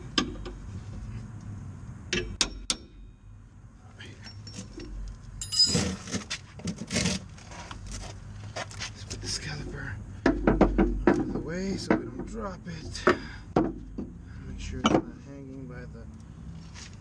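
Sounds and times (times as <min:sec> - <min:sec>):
metal tools clinking: 0:04.2 - 0:06.2
rattling scraping clatters: 0:04.3 - 0:08.1.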